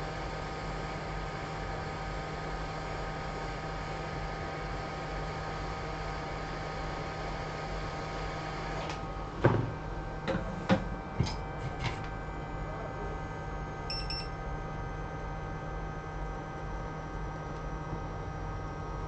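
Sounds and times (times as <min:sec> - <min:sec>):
electrical hum: 0:00.0 - 0:19.0
high double beep: 0:13.9 - 0:14.3.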